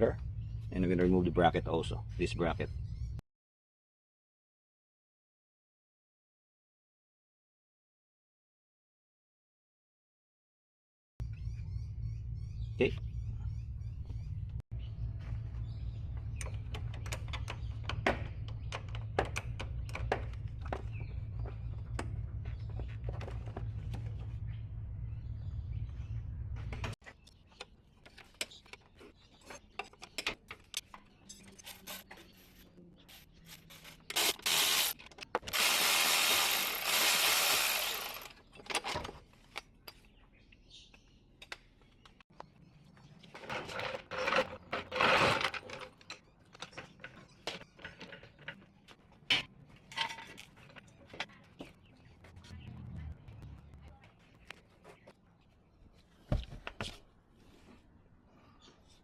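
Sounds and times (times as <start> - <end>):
power tool running: 34.2 - 38.3.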